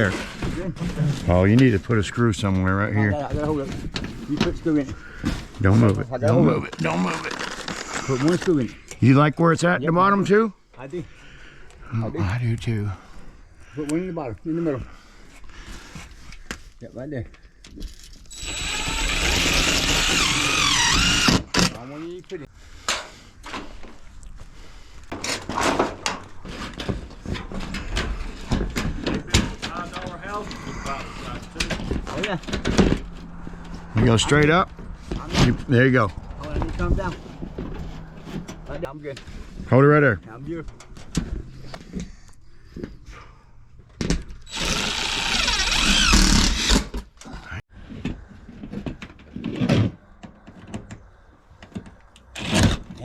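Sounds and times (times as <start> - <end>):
power drill driving screw: 18.3 - 21.8, 44.4 - 47.0.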